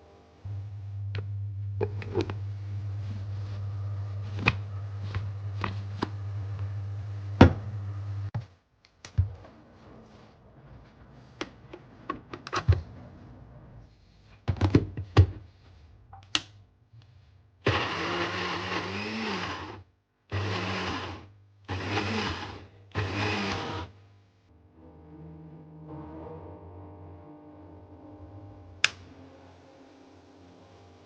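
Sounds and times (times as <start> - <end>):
electric blender pulsing: 17.6 - 23.9.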